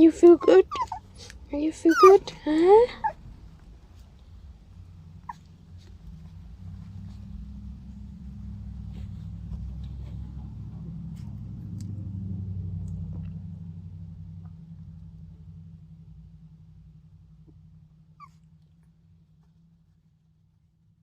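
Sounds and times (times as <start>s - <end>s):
puppy whimpering: 0.0s - 3.4s, 5.1s - 5.8s, 18.2s - 18.5s
low steady rumble: 0.0s - 21.0s.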